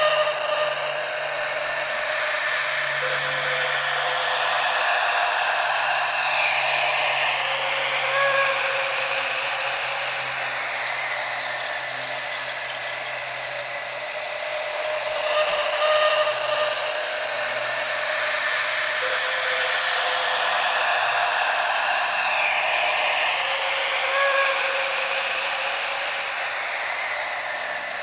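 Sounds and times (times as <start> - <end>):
faint whistling tones: 0.0 - 28.0
shaken percussion hiss: 0.0 - 28.0.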